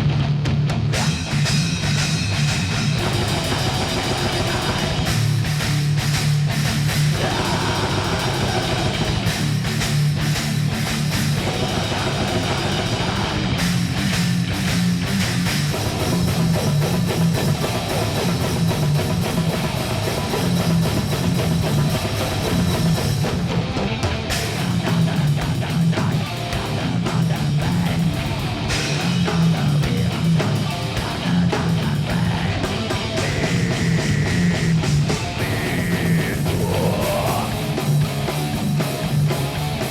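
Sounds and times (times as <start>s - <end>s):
distorted electric guitars: 0.0s - 39.9s
drum kit playing: 0.0s - 39.9s.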